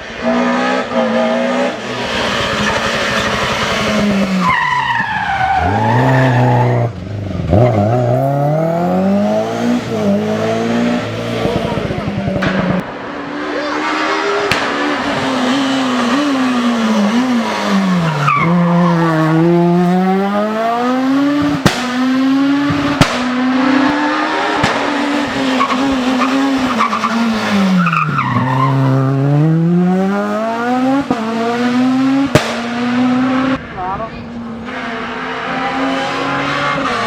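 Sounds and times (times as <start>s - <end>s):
rally car engine revving: 0.0s - 37.0s
sharp cracks: 14.4s - 15.3s, 21.5s - 22.2s, 22.9s - 23.4s, 24.5s - 25.1s, 32.3s - 32.9s.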